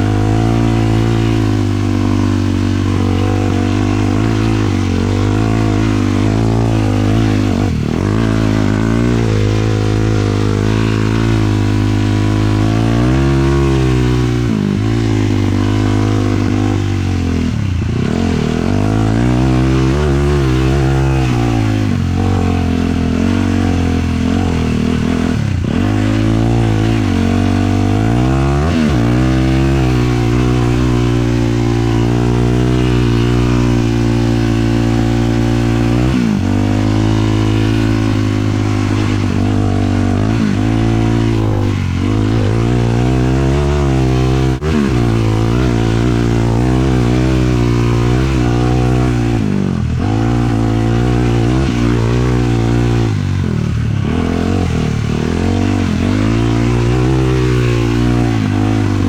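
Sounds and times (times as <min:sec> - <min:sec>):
quad engine revving: 0:00.0 - 0:59.0.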